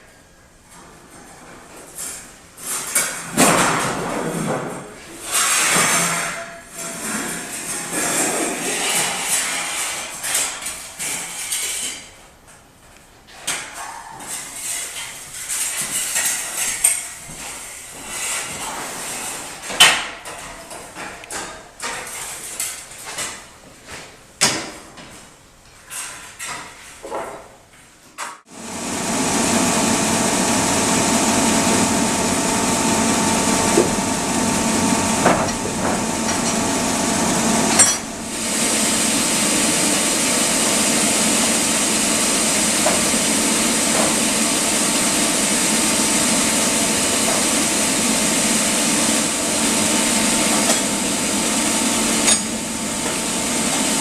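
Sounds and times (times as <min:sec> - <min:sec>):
sawmill machinery running: 0:28.5 - 0:54.0.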